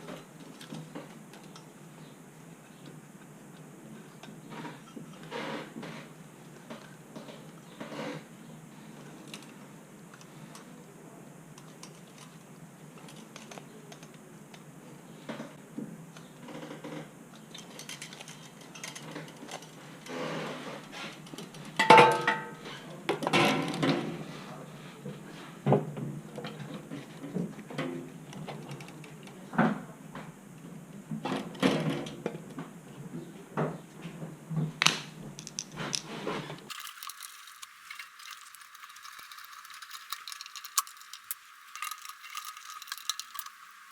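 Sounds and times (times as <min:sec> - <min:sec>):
metal tools clanking and rattling: 0:36.7 - 0:43.9.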